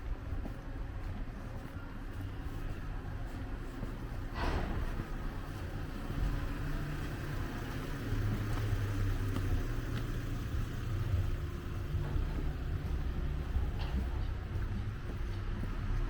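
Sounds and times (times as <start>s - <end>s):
car engine running: 5.0s - 16.0s.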